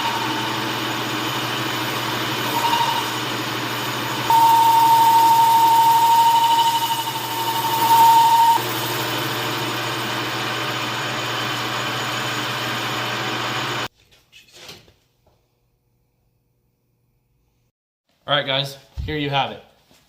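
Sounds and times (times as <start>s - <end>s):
power grinder grinding metal: 0.0s - 13.9s.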